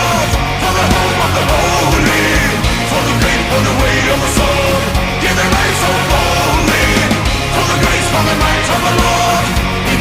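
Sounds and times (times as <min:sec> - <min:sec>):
loud rock music: 0:00.0 - 0:10.0.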